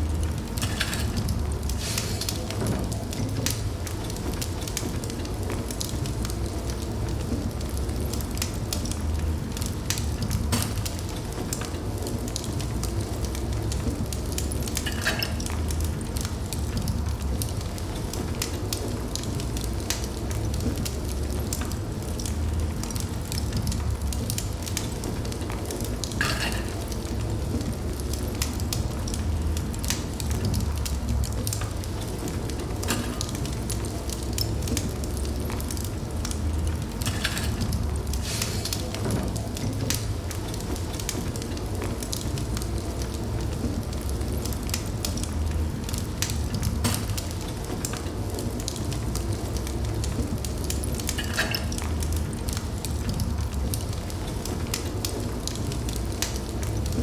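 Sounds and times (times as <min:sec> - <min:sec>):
fire crackles and pops: 0:00.0 - 0:57.0
fire rumbling in fireplace: 0:00.0 - 0:57.0.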